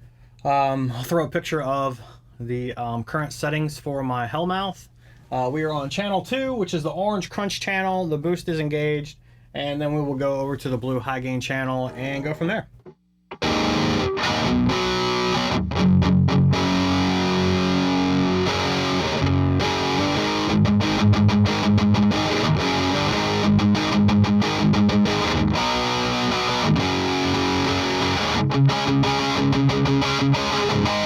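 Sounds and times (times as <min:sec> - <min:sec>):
distorted electric guitar: 0:13.3 - 0:31.0.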